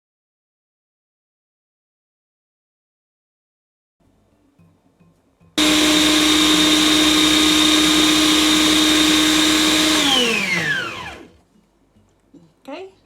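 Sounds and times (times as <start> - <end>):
electric blender running: 5.6 - 11.4.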